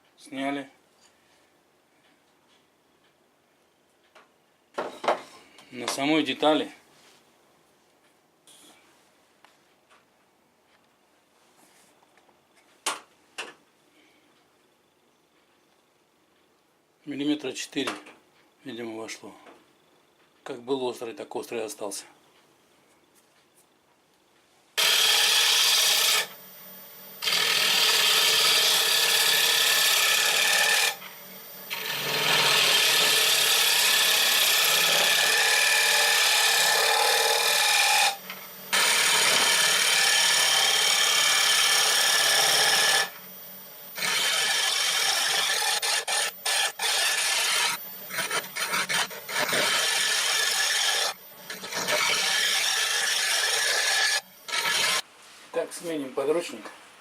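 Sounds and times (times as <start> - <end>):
lathe tool cutting wood: 24.8 - 55.0.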